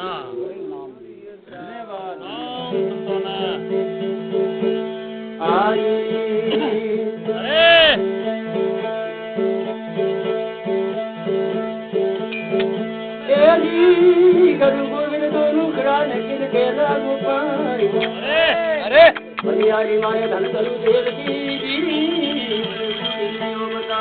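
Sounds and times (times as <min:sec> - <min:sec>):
person singing ornamented notes: 0:00.0 - 0:03.7, 0:05.4 - 0:07.8, 0:13.2 - 0:24.0
plucked string instrument: 0:00.0 - 0:24.0.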